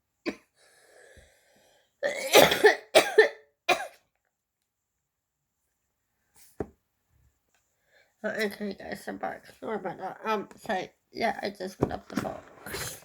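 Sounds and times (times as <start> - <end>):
woman coughing: 2.0 - 4.0.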